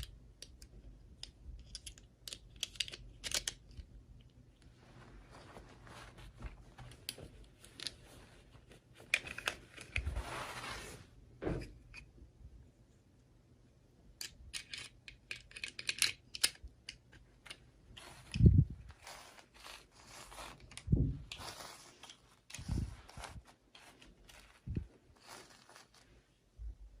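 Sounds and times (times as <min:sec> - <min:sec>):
plastic packaging crinkling and tearing: 0:18.2 - 0:26.2.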